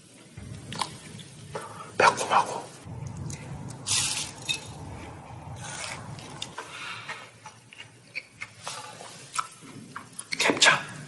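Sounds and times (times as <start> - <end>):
chewing and crunching food: 5.8 - 10.4.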